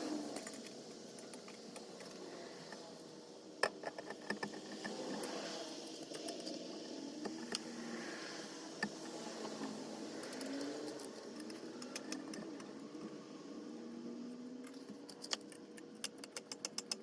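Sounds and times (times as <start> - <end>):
steady background hum: 0.0 - 17.0
metal clicks and rattles: 14.7 - 17.0.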